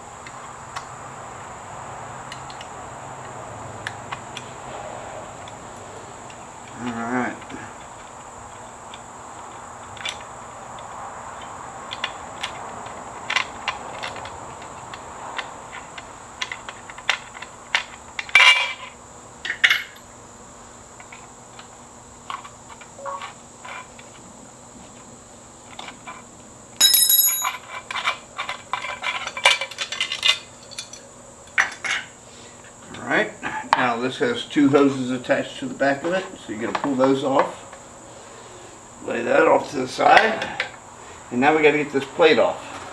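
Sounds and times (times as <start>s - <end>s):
ringing metal clatter: 26.8s - 27.6s
metal tools clinking: 26.8s - 27.7s.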